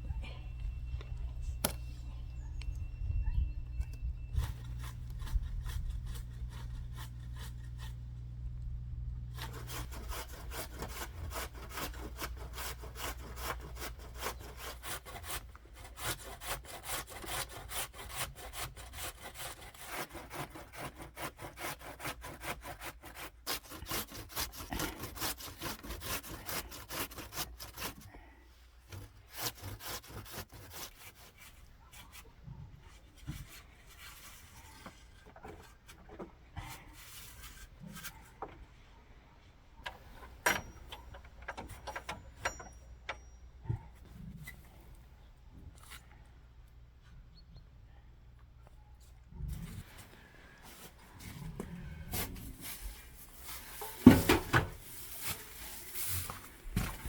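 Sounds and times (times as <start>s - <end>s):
low steady hum: 0.0s - 14.1s
hand saw cutting wood: 4.4s - 8.3s, 9.3s - 28.1s, 28.9s - 32.2s.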